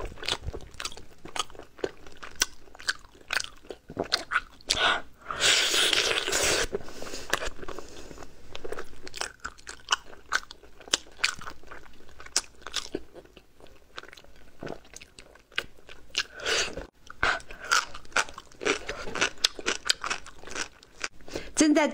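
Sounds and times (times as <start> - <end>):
chewing with sharp clicks: 0.2 - 4.8.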